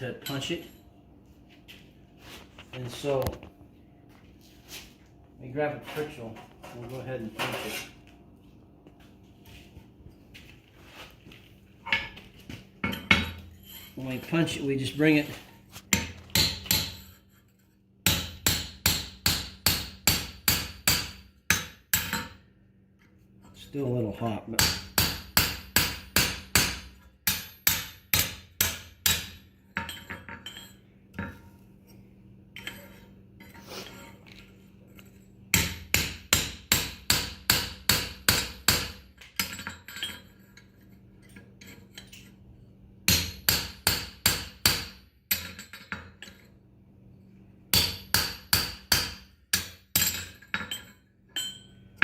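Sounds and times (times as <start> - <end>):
hammer striking hot metal on anvil: 15.9 - 17.2, 18.0 - 22.4, 24.6 - 30.6, 35.5 - 39.8, 43.1 - 45.8, 47.7 - 50.8.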